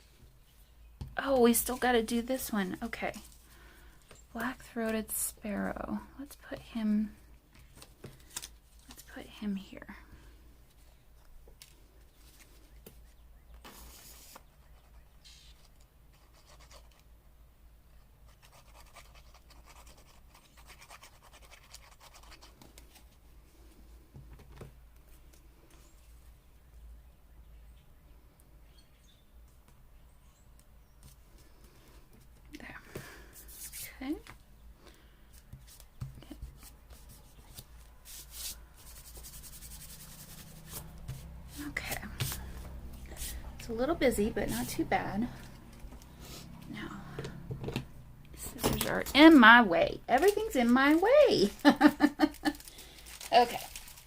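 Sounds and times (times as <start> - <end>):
paper rustling and crackling: 7.6 - 9.1, 50.2 - 54.0
paper scraping: 13.6 - 15.8, 35.6 - 42.6.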